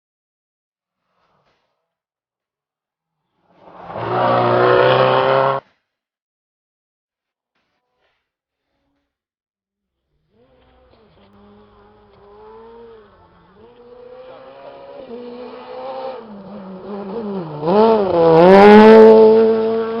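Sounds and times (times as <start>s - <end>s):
vehicle engine revving: 3.6s - 5.6s, 10.3s - 20.0s.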